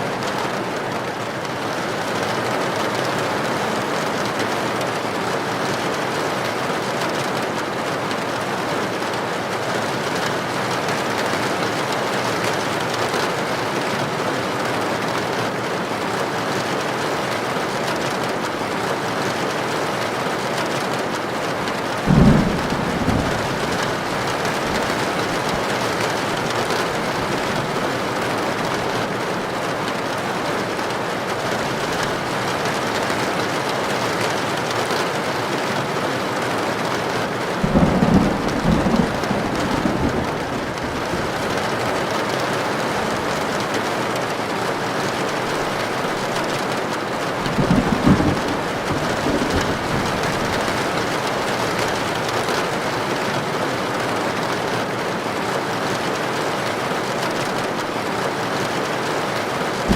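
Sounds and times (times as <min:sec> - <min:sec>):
heavy rain on a tin roof: 0:00.0 - 0:59.9
thunder clap: 0:21.6 - 0:29.8, 0:37.6 - 0:42.0, 0:45.3 - 0:52.6.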